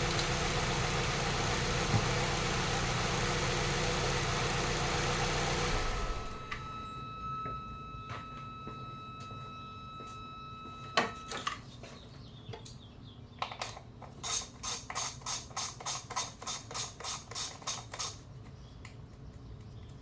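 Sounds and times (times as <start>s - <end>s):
ratchet wrench clicking: 14.2s - 18.2s.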